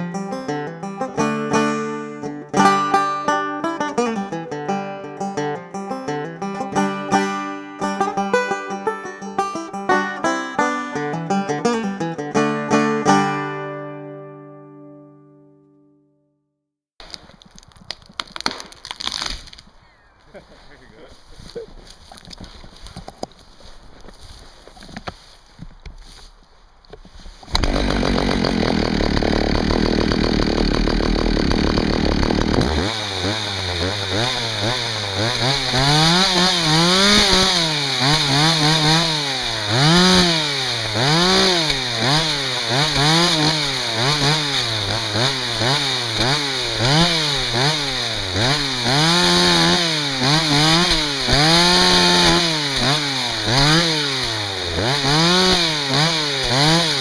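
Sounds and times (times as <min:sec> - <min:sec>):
chainsaw revving: 0:00.0 - 0:13.4, 0:27.5 - 0:57.0.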